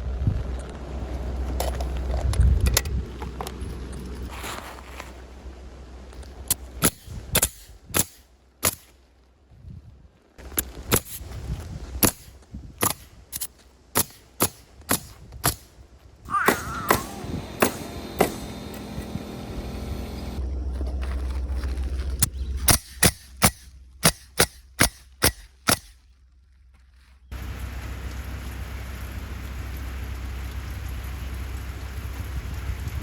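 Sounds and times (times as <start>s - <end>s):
nail gun shots: 6.8s - 8.9s, 12.0s - 15.7s, 16.5s - 18.6s, 22.7s - 26.0s.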